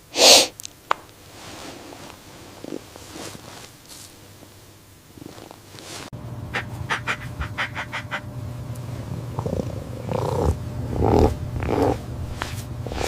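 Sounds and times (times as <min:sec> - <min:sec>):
kitten mewing: 0:06.6 - 0:08.3, 0:09.3 - 0:12.0
kitten purring: 0:08.9 - 0:13.0.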